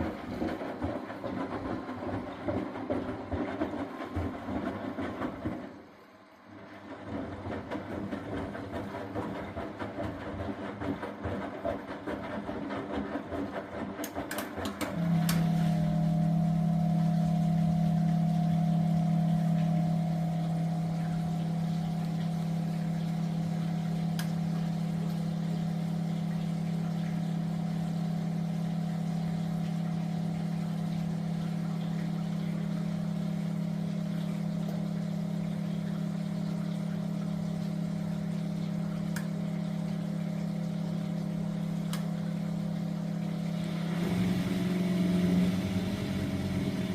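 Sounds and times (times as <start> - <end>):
washing machine churning: 0.0 - 46.9
loud steady hum: 14.4 - 46.9.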